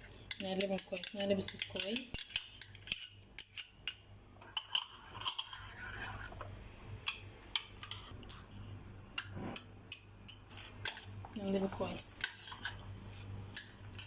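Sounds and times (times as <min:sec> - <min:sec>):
utensil scraping a bowl: 0:04.4 - 0:06.5, 0:10.3 - 0:14.0.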